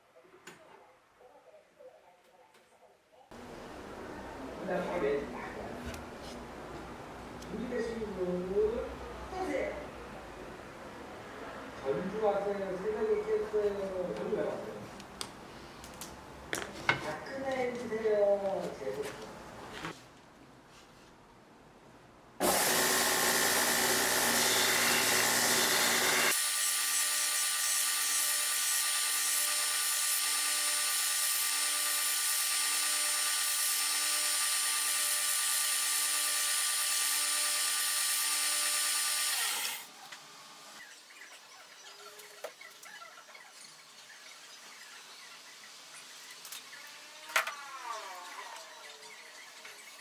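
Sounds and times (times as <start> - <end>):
power tool cutting wood: 22.4 - 39.9, 46.9 - 49.8.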